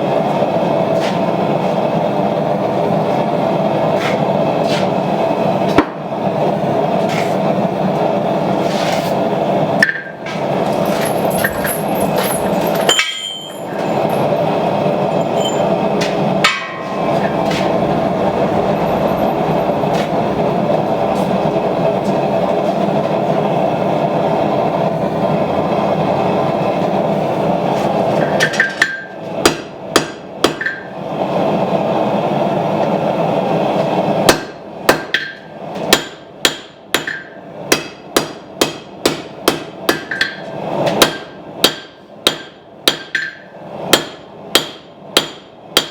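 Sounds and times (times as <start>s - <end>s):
forge burner rushing: 0.0s - 45.9s
hammer blows on hot steel: 9.8s - 17.8s, 34.3s - 45.9s.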